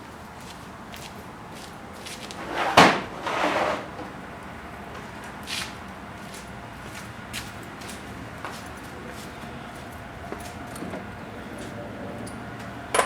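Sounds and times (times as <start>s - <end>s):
tool drawer sliding shut: 2.4s - 4.1s.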